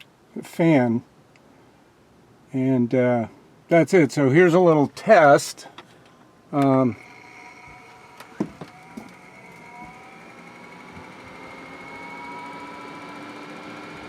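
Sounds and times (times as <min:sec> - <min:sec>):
fan motor whine: 0:06.1 - 0:14.0.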